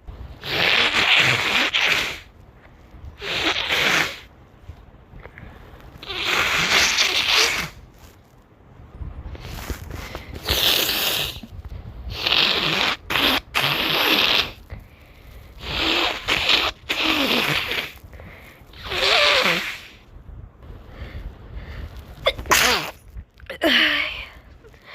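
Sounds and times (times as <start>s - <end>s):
person blowing nose: 0.4s - 2.3s, 3.2s - 4.3s, 6.0s - 7.8s, 9.4s - 11.5s, 12.1s - 14.8s, 15.6s - 20.0s, 22.2s - 23.0s.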